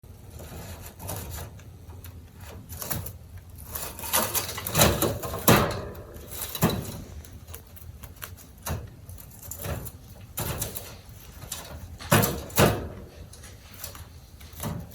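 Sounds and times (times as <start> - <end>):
rabbit scratching hay mat: 0.0 - 14.9.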